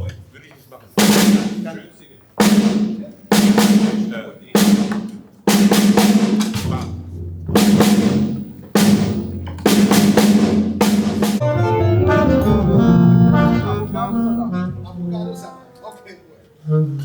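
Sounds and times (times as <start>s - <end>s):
drum kit hits: 1.0s - 1.8s, 2.4s - 14.4s
pitched instrument notes: 7.2s - 17.0s
cymbal ringing: 7.6s - 14.5s
bass playing low notes: 8.8s - 10.0s, 10.9s - 15.5s.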